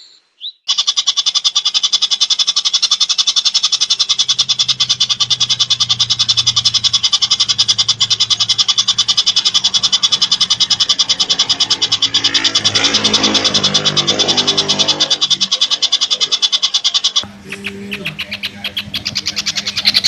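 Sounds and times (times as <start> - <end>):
bird rattling trill: 0.6 - 20.0
faint low hum: 17.2 - 20.0.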